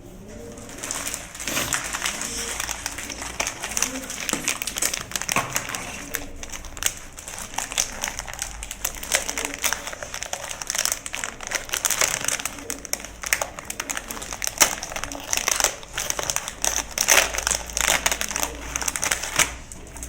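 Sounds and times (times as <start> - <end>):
cardboard box rustling and crinkling: 0.6 - 6.3.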